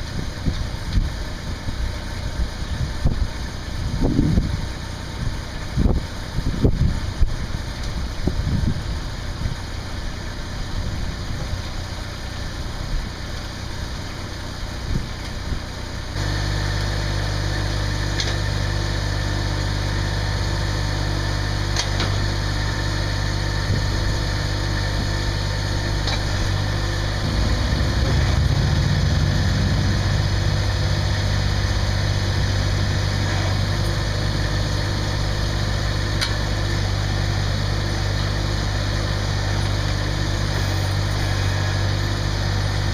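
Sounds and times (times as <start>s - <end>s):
diesel tractor engine idling: 0.0s - 42.9s
rough uneven noise: 26.1s - 34.0s.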